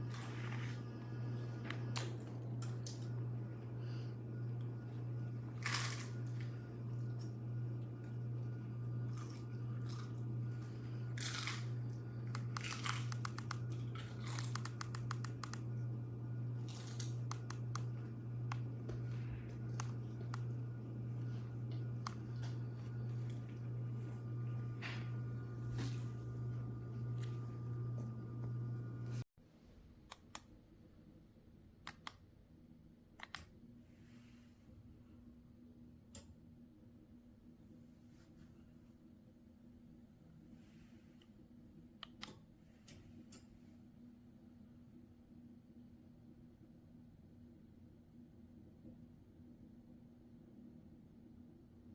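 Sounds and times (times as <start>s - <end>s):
steady low hum: 0.0s - 29.3s.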